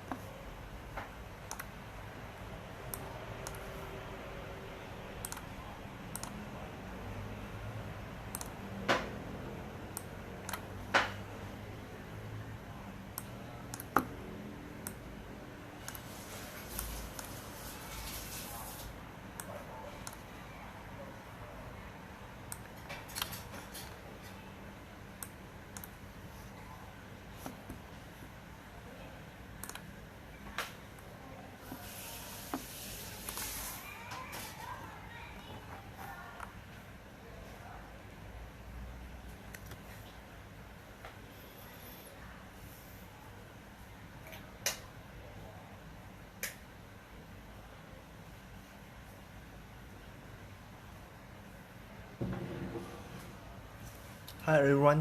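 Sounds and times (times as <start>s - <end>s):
sharp knocks: 52.2s - 53.0s.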